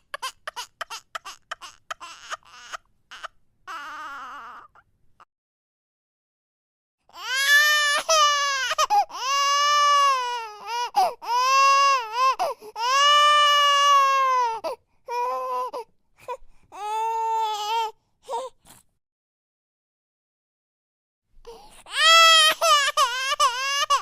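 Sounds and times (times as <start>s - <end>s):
baby crying: 0.0s - 4.9s, 7.1s - 18.6s, 21.5s - 24.0s.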